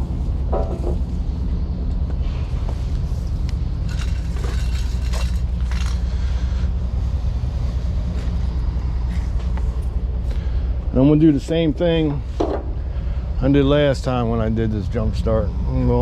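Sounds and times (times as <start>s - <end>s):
vehicle engine idling: 0.0s - 16.0s
tools clanking and rattling: 3.1s - 6.2s.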